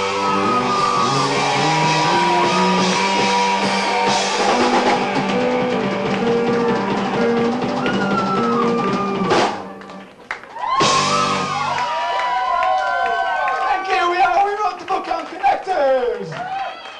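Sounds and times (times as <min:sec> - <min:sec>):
rock band instrumental: 0:00.0 - 0:11.9.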